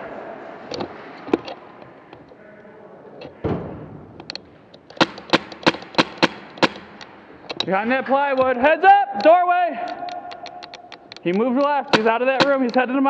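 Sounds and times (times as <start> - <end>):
airsoft gun shots: 4.9 - 7.3.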